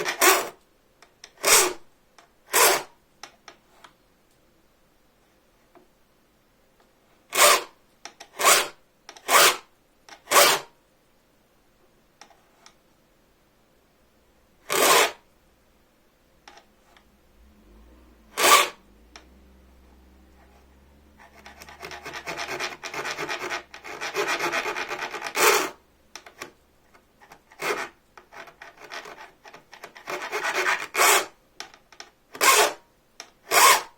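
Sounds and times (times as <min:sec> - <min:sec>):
hand file filing saw blade: 0:00.0 - 0:00.6, 0:01.4 - 0:01.8, 0:02.5 - 0:02.9, 0:07.4 - 0:07.7, 0:08.3 - 0:09.7, 0:10.3 - 0:10.7, 0:14.7 - 0:15.2, 0:18.3 - 0:18.8, 0:20.4 - 0:25.8, 0:27.5 - 0:31.4, 0:32.4 - 0:32.8, 0:33.5 - 0:33.9.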